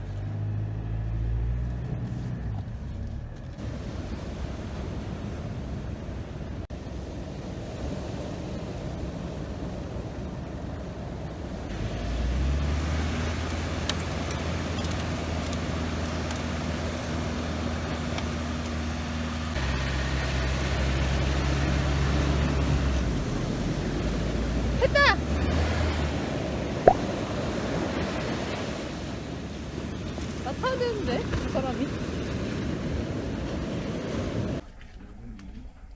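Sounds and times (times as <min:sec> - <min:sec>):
vehicle engine humming: 0:00.0 - 0:07.1, 0:10.6 - 0:31.5.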